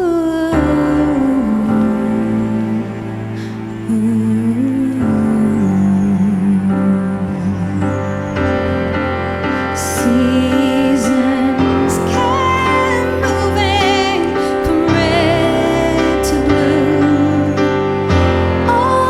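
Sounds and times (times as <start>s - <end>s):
slow tender music: 0.0s - 19.0s
high warbling birdsong figures: 0.7s - 19.0s.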